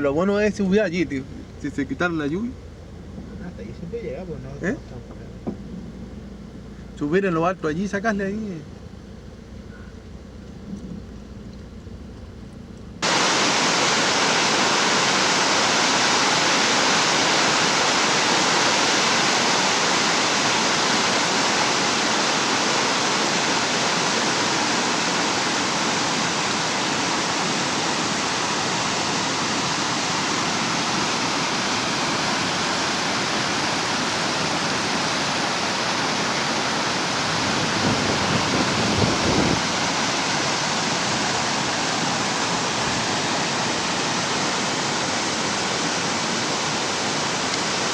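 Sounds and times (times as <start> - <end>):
waterfall rushing: 13.0 - 47.9.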